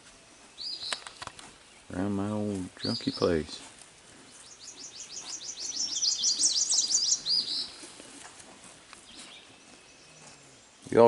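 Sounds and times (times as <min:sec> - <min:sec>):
songbird singing high notes: 0:04.5 - 0:07.8.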